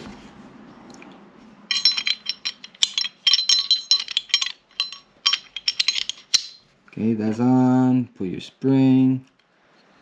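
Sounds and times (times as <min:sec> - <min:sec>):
pistol parts clinking and rattling: 0:01.7 - 0:06.7.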